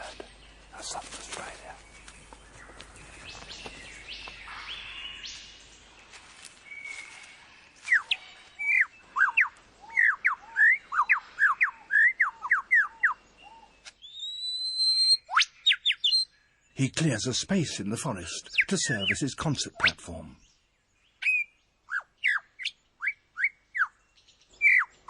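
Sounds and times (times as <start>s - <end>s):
lyrebird whistling song: 6.6s - 16.3s, 18.4s - 19.2s, 21.1s - 25.0s.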